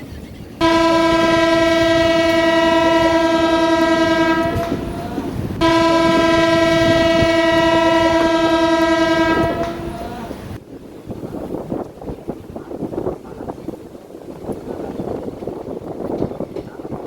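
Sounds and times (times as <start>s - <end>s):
moving train rumble: 0.0s - 17.0s
train horn blasts: 0.6s - 10.6s.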